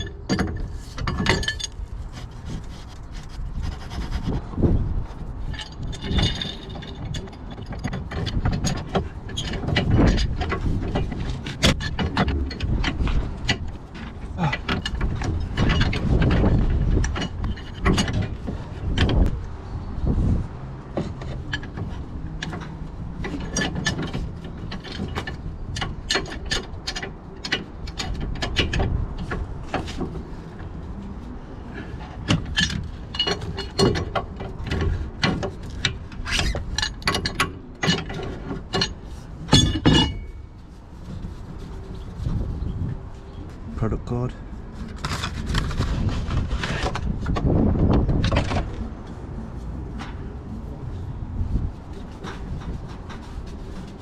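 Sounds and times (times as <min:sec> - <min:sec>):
metal tool clinks and knocks: 0:00.0 - 0:01.8, 0:05.5 - 0:10.3, 0:36.8 - 0:40.4.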